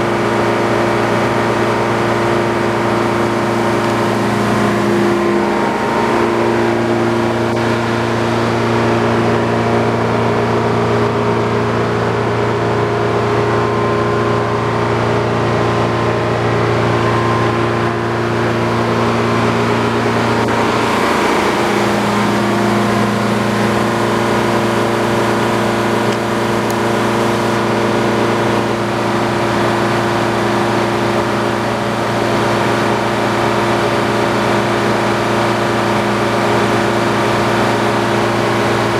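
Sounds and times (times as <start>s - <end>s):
sawmill humming: 0.0s - 38.9s.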